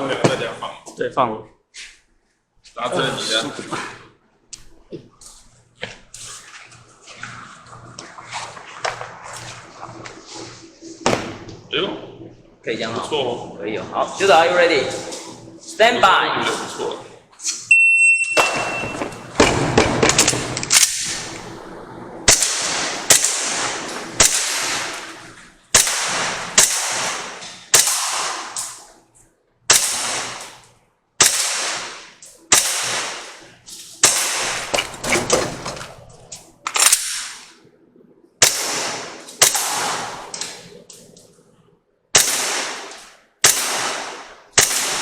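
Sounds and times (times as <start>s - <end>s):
airsoft pistol shots: 22.3s - 25.1s, 25.7s - 28.8s, 29.7s - 30.6s, 31.2s - 33.4s, 34.0s - 34.8s, 38.4s - 40.4s, 42.2s - 45.0s.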